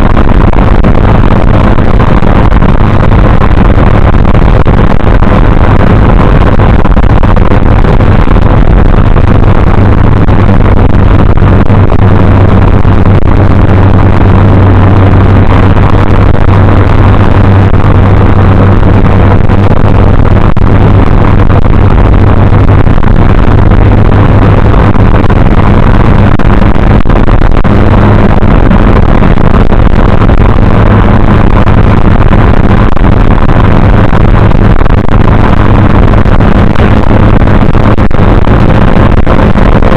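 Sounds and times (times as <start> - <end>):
car engine and exhaust running: 0.0 - 39.9.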